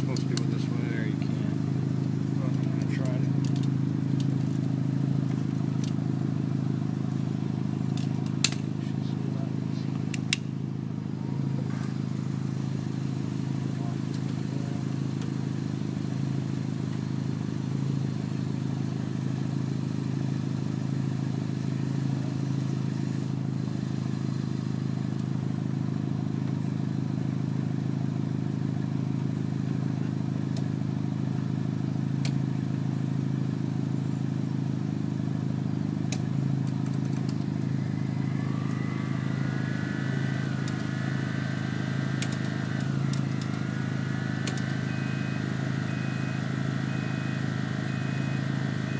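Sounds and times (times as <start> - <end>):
engine idling: 0.0 - 48.9
faint rising whine: 37.4 - 48.9.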